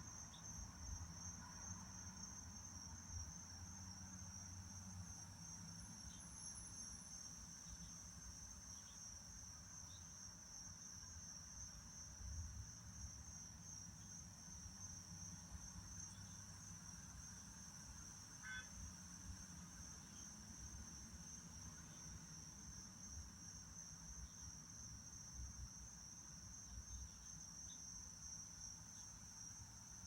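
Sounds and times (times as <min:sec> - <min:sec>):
crickets trilling: 0:03.1 - 0:10.6.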